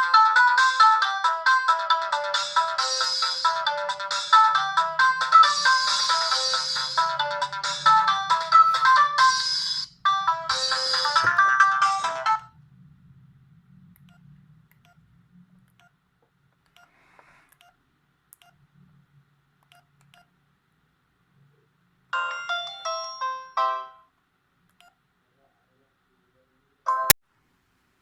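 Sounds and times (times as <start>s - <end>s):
polyphonic ringtone: 0.0s - 12.5s, 22.2s - 24.0s
bright synthesized notes: 2.5s - 12.5s.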